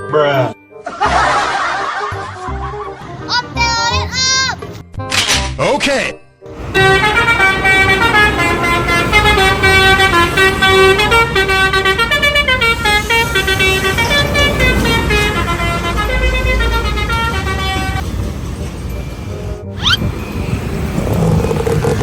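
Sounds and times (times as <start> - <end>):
multi-tone horn melody: 6.5 - 18.4
low engine rumble: 6.5 - 22.0.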